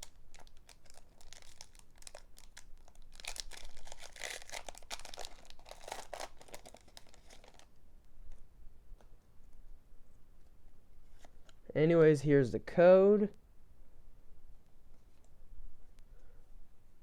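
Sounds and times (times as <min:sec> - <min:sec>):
foil wrapper tearing and crinkling: 0:00.0 - 0:07.7.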